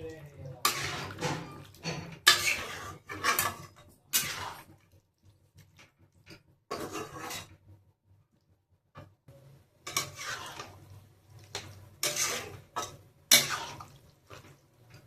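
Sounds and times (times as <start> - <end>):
metal utensils clinking on cookware: 0.1 - 4.6, 9.9 - 10.8, 11.5 - 15.0.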